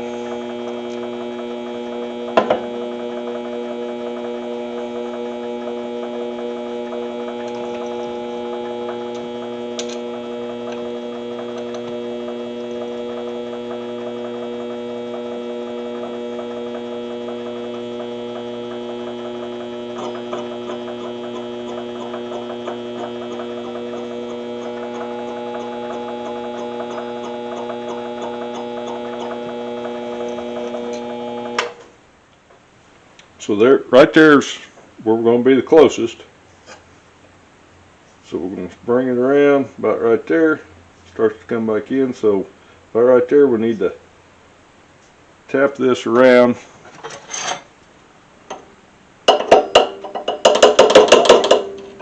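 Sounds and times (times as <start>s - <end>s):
lathe motor humming: 0.0s - 31.8s.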